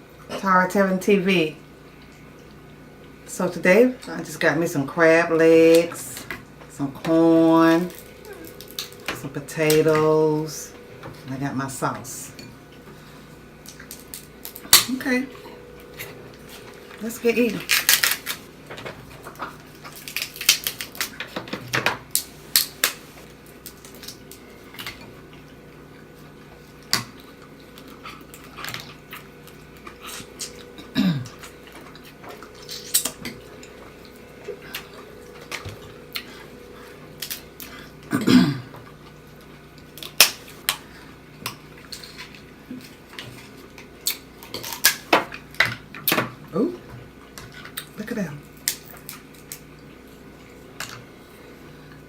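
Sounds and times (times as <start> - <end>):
clicks and smacks of eating: 17.6 - 36.4, 38.7 - 51.1.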